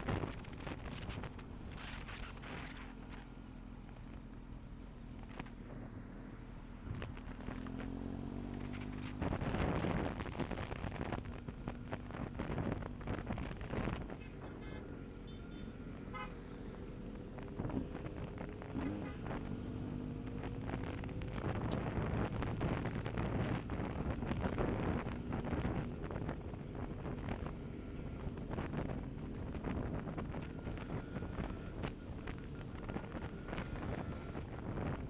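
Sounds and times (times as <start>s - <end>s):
engines running: 0.0s - 35.0s
vehicle horns tooting: 14.5s - 16.4s.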